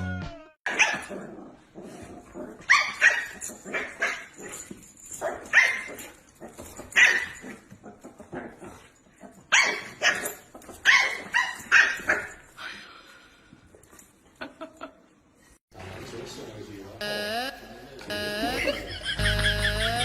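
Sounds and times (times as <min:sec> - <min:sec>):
dog barking high-pitched: 0:00.7 - 0:01.1, 0:02.7 - 0:04.3, 0:05.2 - 0:06.0, 0:07.0 - 0:07.4, 0:09.5 - 0:12.4.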